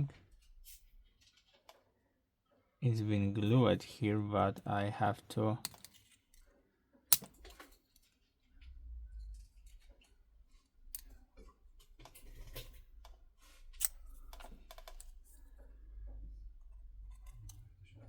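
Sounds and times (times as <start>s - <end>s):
small tools clicking and scraping: 5.6s - 8.2s, 9.3s - 15.7s, 16.6s - 18.0s.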